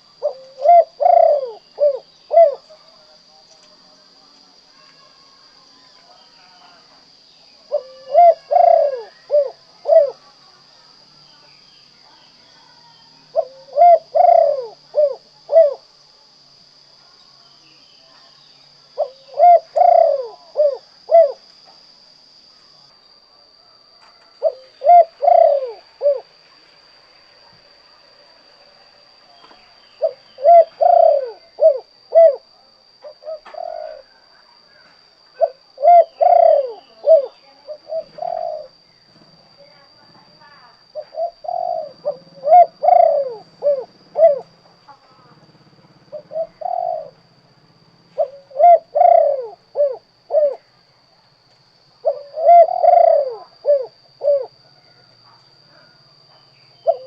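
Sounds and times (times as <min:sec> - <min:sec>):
dove cooing: 0:00.0 - 0:03.0, 0:07.5 - 0:10.6, 0:12.5 - 0:16.9, 0:18.8 - 0:21.5, 0:23.6 - 0:26.4, 0:29.4 - 0:39.4, 0:40.0 - 0:50.7, 0:52.0 - 0:56.1, 0:56.8 - 0:57.0
faint high whine: 0:00.0 - 0:57.0.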